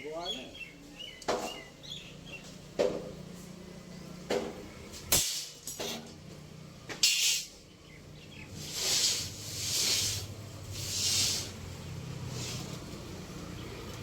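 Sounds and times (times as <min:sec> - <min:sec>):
sharp metallic clanks: 0:05.1 - 0:06.2.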